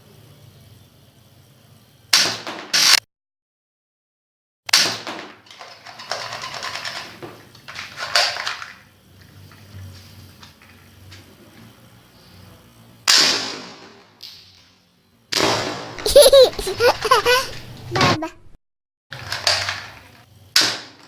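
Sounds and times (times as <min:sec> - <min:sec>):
toy gun shots: 0:02.1 - 0:03.0, 0:04.7 - 0:05.4, 0:13.1 - 0:14.0.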